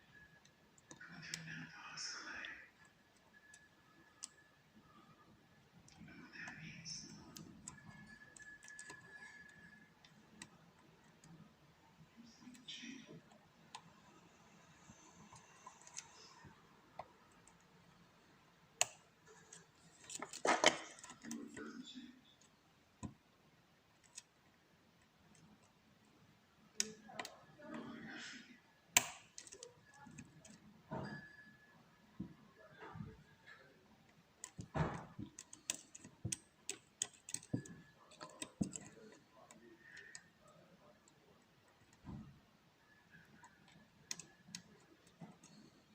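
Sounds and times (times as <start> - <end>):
lock pick clicking on pins: 28.9 - 30.6, 34.1 - 40.4.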